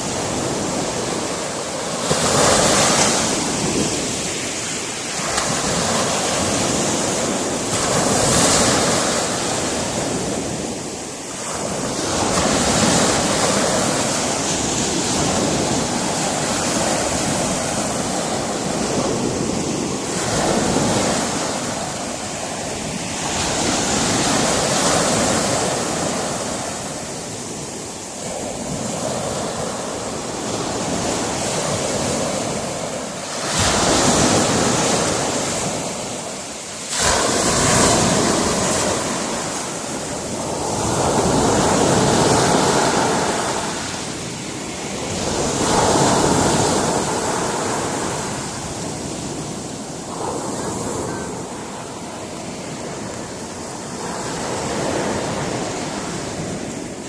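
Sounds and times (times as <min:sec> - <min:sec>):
surf breaking on rocks: 0:28.4 - 0:51.8.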